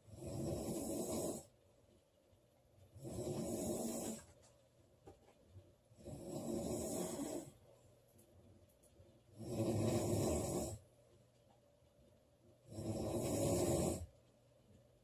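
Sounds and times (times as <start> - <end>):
woman snoring: 0.1 - 1.5, 3.0 - 4.2, 6.0 - 7.5, 9.4 - 10.8, 12.7 - 14.1.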